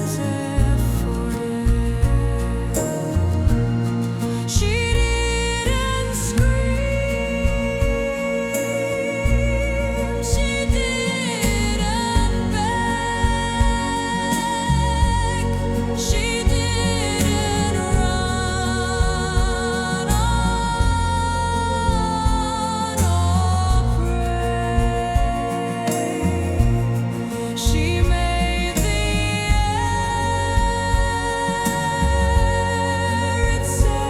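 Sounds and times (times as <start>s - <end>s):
steady drum beat: 0.0s - 34.0s.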